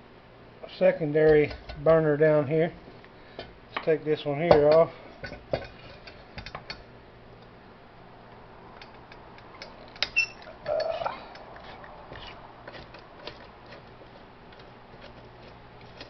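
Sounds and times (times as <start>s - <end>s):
brief squeak: 10.0s - 11.2s.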